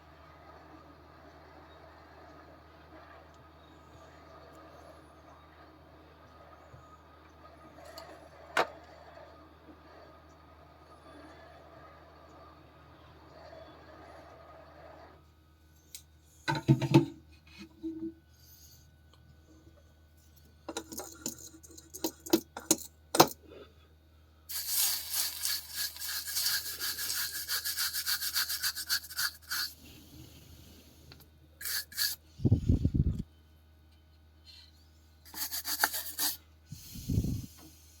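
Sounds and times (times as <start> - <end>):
tool rubbing on circuit board: 24.5 - 29.8, 31.6 - 32.2, 35.3 - 36.4.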